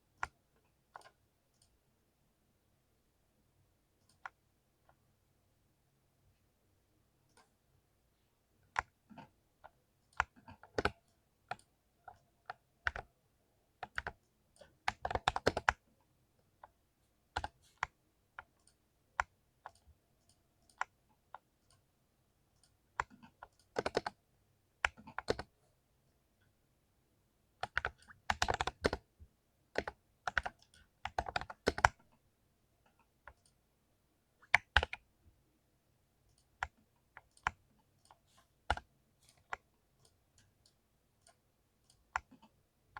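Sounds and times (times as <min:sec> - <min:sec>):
mechanical keyboard typing: 0:10.2 - 0:13.1, 0:13.8 - 0:14.2, 0:14.9 - 0:15.8, 0:23.0 - 0:24.2, 0:24.8 - 0:25.6, 0:27.6 - 0:29.1, 0:29.7 - 0:32.1, 0:34.4 - 0:35.1, 0:41.3 - 0:42.6.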